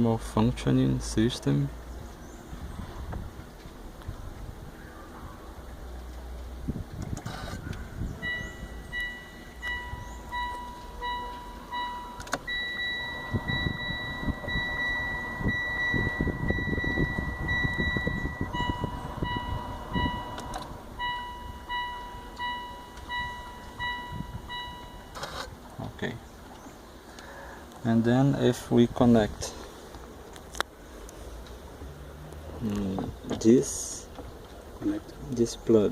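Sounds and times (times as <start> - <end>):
car warning chime beeping: 8.1 - 25.5.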